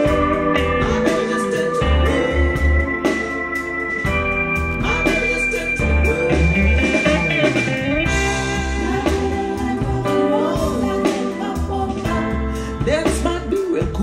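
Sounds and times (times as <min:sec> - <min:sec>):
guitar with bending notes: 0:00.0 - 0:12.0
blues-rock through speakers: 0:00.0 - 0:14.0
heavy bass: 0:00.0 - 0:14.0.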